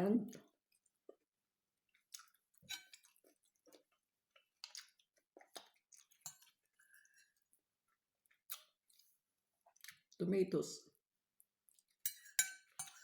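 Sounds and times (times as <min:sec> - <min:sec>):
person chewing food: 0:01.9 - 0:10.2.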